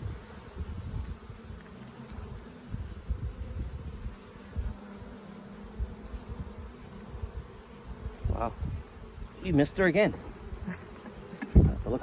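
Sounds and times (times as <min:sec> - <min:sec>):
bees buzzing: 0:00.0 - 0:12.0
thumps on microphone: 0:11.4 - 0:11.8.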